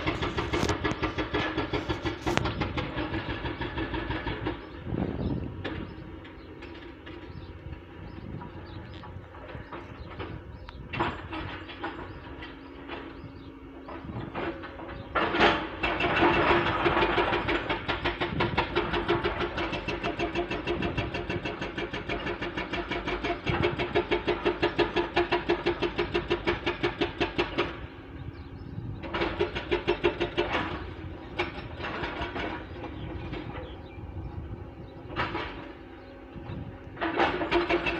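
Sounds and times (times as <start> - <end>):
hydraulic breaker hammering stone: 0.0 - 7.5, 9.3 - 37.9.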